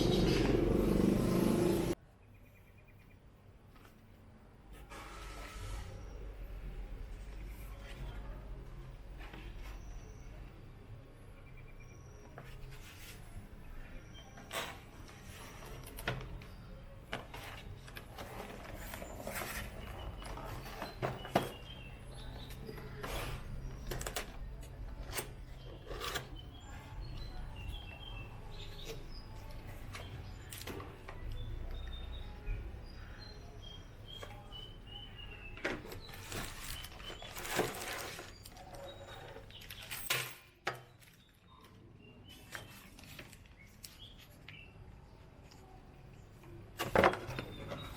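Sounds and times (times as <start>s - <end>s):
small birds chirping: 0.0s - 3.4s, 5.8s - 47.9s
rustling: 35.9s - 40.1s.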